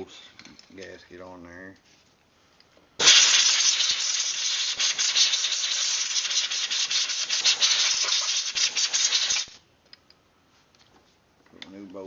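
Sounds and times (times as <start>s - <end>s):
compressed air hissing: 3.0s - 9.6s.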